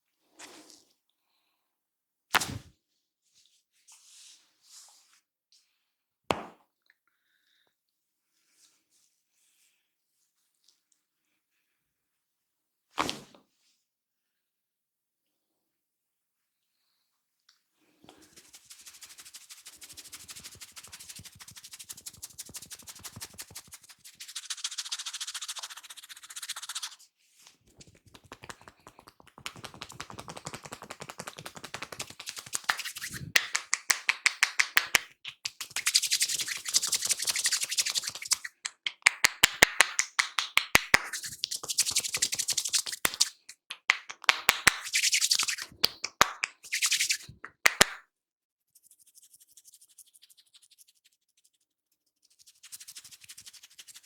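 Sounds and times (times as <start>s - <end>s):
rubbing and scratching hair: 18.1s - 48.0s, 48.7s - 54.0s
fingers tapping on scalp: 27.7s - 48.0s.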